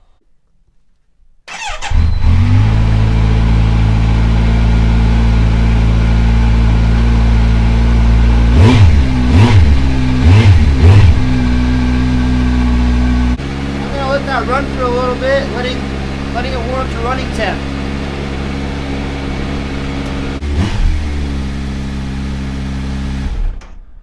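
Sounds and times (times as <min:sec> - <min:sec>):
starter motor cranking: 0:01.5 - 0:02.6, 0:13.5 - 0:21.0
engine throttle blips: 0:01.5 - 0:23.7
motorcycle engine idling: 0:01.6 - 0:23.2.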